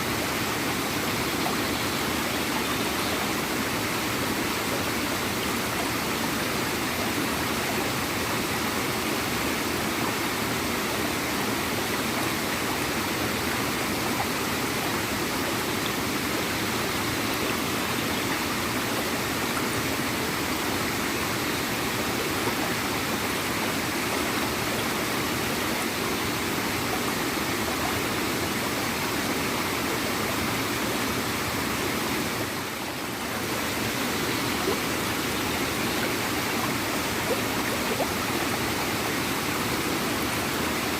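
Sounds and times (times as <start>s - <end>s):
small waterfall splashing into stream: 3.2s - 40.9s.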